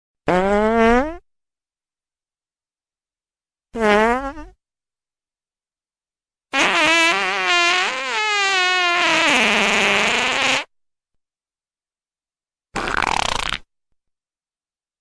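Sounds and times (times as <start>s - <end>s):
fart sound effects: 0.3s - 1.2s, 3.7s - 4.6s, 6.5s - 10.7s, 12.8s - 13.7s.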